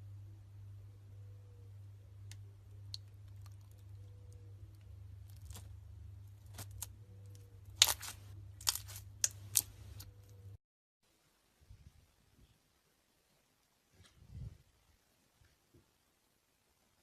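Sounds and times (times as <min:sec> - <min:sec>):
low electrical hum: 0:00.0 - 0:17.0
slime crackling and popping: 0:05.2 - 0:05.7, 0:06.4 - 0:07.0, 0:07.6 - 0:10.1.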